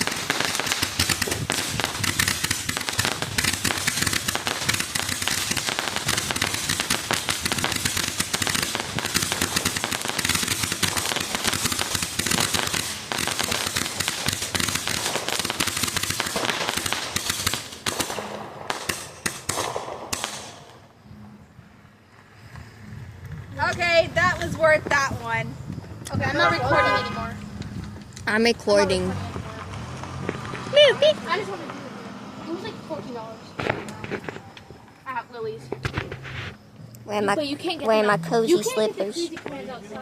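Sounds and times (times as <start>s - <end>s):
firework crackling pops: 0.0s - 21.0s, 33.6s - 34.7s, 35.7s - 36.6s.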